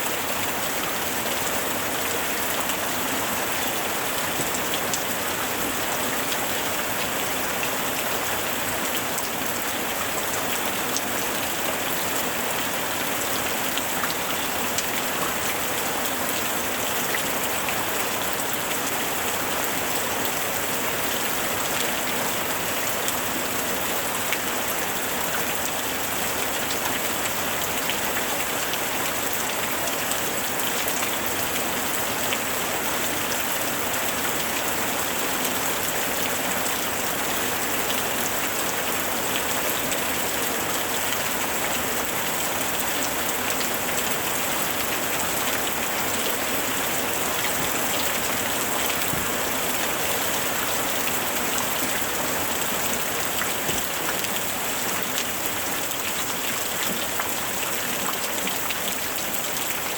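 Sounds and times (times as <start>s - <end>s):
steady rain falling: 0.0s - 59.9s
raindrops pattering on a surface: 51.2s - 59.9s.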